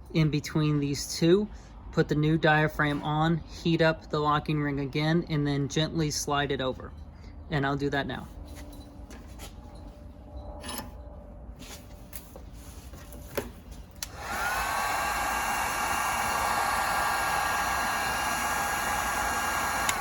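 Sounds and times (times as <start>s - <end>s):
heat gun fan hum: 13.9s - 20.0s.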